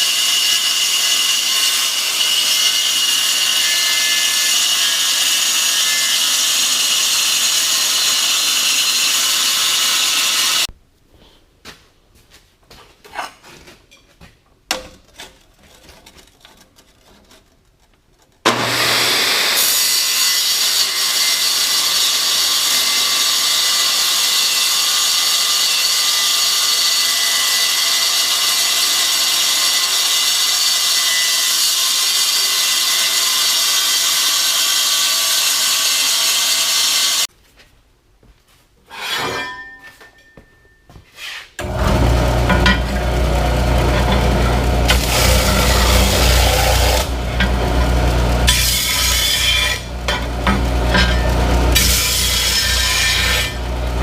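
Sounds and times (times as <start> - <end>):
power saw cutting steel: 0.0 - 10.7, 18.4 - 37.3, 41.6 - 54.0.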